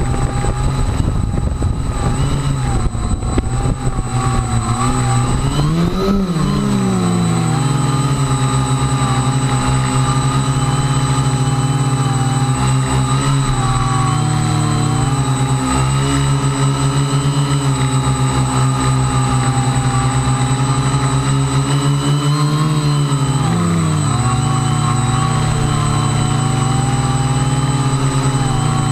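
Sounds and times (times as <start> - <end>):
remote control aircraft motors buzzing: 0.0 - 28.9.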